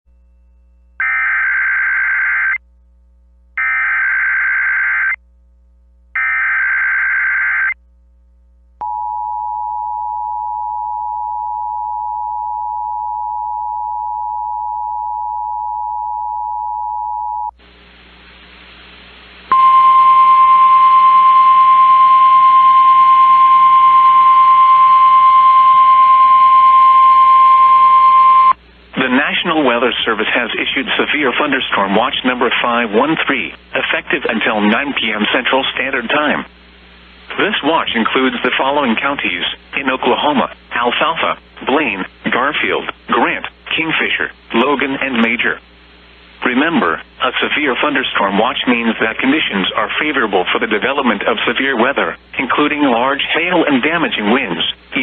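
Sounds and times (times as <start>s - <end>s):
hum: 0.1s - 52.9s
steady warning alarm tone: 1.0s - 2.6s, 3.6s - 5.2s, 6.2s - 7.8s, 19.5s - 28.6s
receiver hiss: 17.5s - 55.0s
two-tone attention signal: 19.5s - 28.6s.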